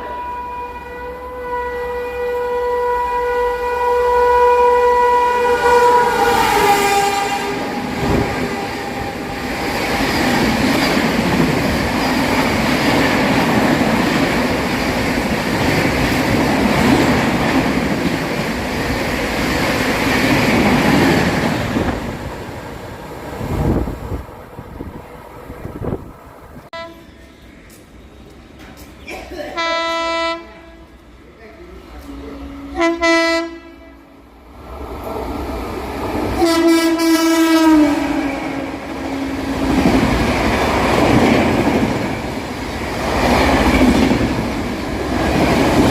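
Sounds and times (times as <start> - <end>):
train horn: 0.0 - 9.5, 26.7 - 27.3, 29.6 - 31.0, 32.0 - 34.2, 36.4 - 39.8
train coaches rattling past: 0.0 - 45.9.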